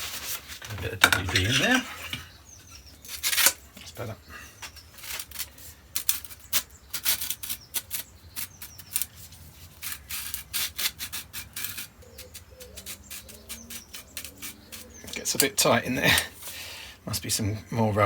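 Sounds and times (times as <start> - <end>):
handle rubbing and scraping on shaft: 0.0 - 4.1.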